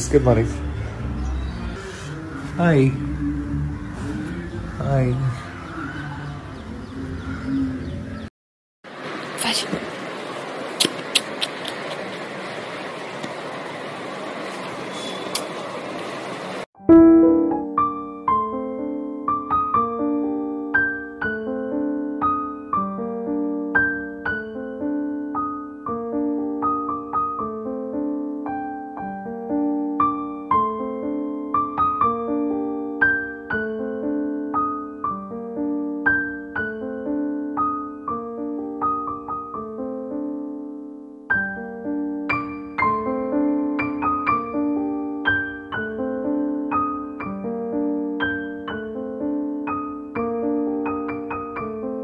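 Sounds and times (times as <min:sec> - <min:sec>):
gentle solo piano music: 0:16.8 - 0:52.0.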